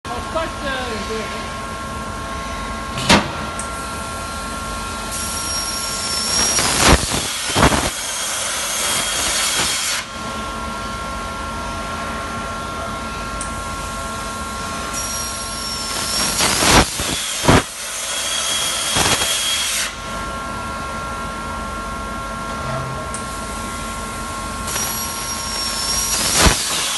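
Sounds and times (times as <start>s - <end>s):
machine hum with fixed tones: 0.1s - 26.9s
cutting torch hissing: 5.1s - 10.1s, 14.9s - 20.0s, 24.6s - 26.9s
loud pops: 26.2s - 26.9s.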